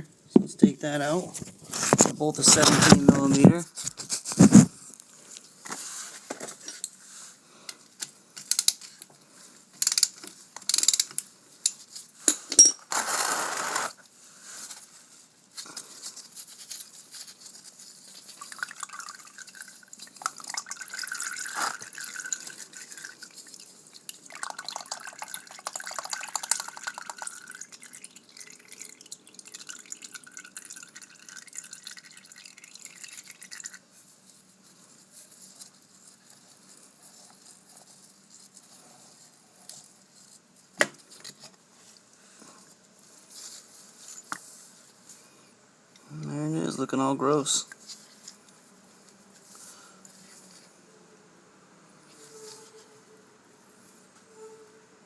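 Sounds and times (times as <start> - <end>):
metal tool clinking on bolt: 12.3 - 12.8.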